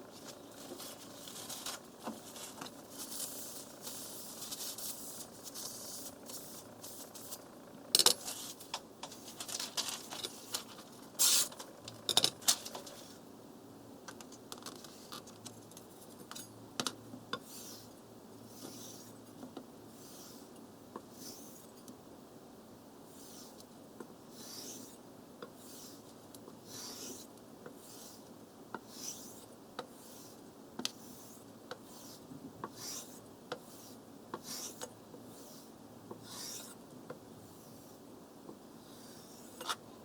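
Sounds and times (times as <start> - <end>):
knife scraping on whetstone: 17.4 - 17.9, 18.6 - 19.2, 23.2 - 23.6, 24.4 - 25.0, 25.6 - 26.0, 26.6 - 30.4, 31.0 - 36.8, 38.8 - 39.8.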